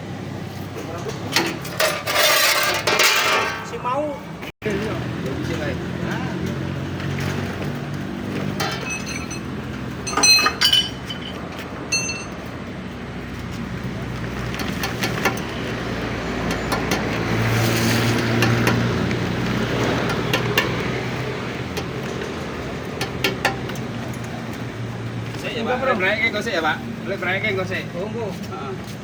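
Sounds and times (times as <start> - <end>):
engine hum: 0.0 - 27.1
metal striking metal: 10.1 - 12.4.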